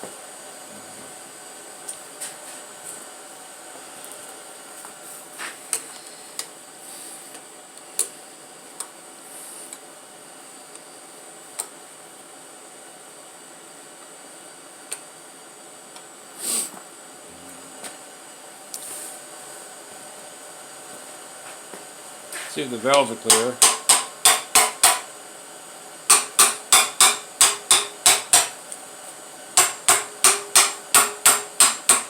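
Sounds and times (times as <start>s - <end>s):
background hiss: 16.3s - 19.3s.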